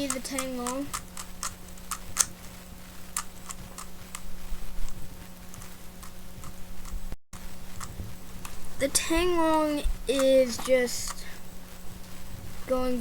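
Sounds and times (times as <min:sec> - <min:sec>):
plastic puzzle cube clicking: 0:00.0 - 0:02.3.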